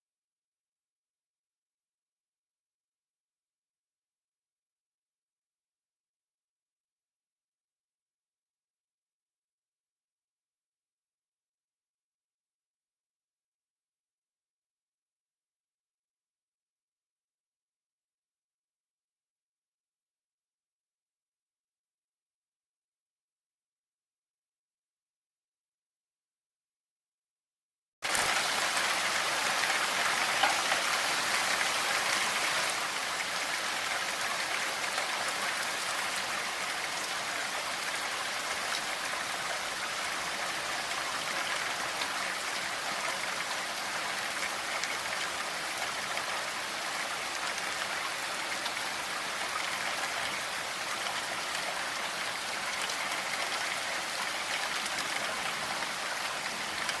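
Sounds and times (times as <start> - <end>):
steady rain falling: 28.0 - 57.0.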